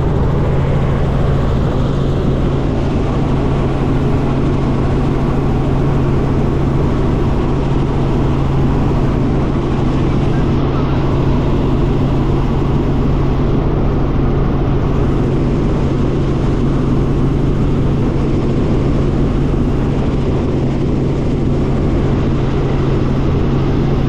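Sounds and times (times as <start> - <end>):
constant low hum: 0.0 - 24.0
helicopter engine and rotor noise: 0.0 - 24.0.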